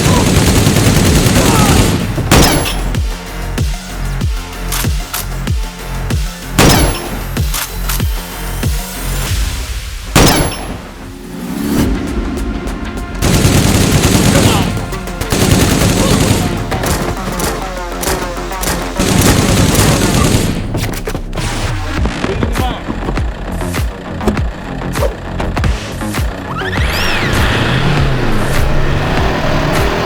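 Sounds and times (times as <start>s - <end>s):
rapid gunfire: 0.0s - 3.8s, 4.6s - 8.1s, 10.2s - 10.9s, 13.2s - 21.0s.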